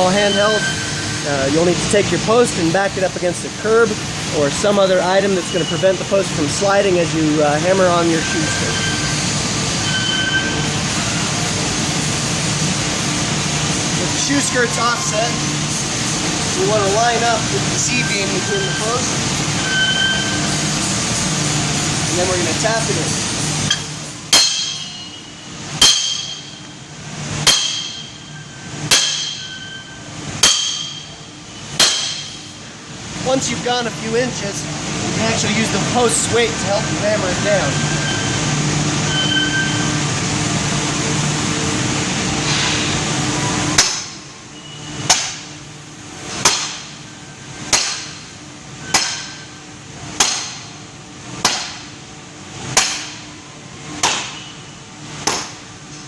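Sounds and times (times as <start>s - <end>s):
sledgehammer striking metal bracket: 23.7s - 25.2s, 25.8s - 26.6s, 27.4s - 28.2s, 28.9s - 29.7s, 30.4s - 31.2s, 31.8s - 32.5s, 48.8s - 49.5s, 50.2s - 50.7s.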